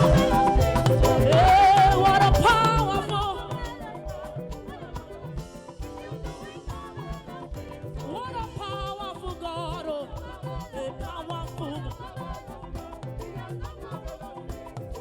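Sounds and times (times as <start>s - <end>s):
wavering melody line: 0.0s - 9.6s
percussion beat: 0.0s - 15.0s
worship band playing: 0.0s - 15.0s.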